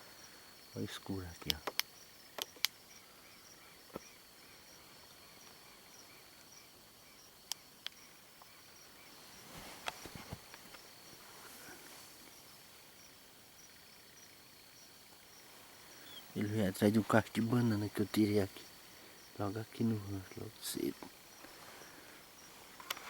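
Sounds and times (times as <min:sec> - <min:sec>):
insects trilling and chirping: 0:00.0 - 0:23.0
sharp soft clicks: 0:01.4 - 0:02.8, 0:07.4 - 0:08.0
rustling: 0:09.1 - 0:12.8.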